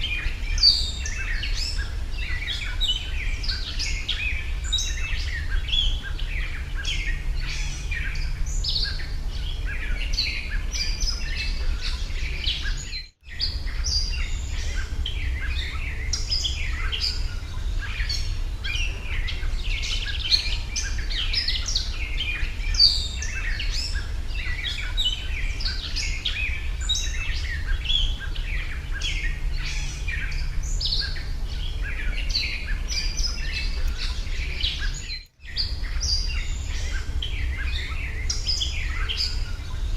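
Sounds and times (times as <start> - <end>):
steady low rumble: 0.0 - 12.8, 13.4 - 39.9
small birds chirping: 0.0 - 39.9.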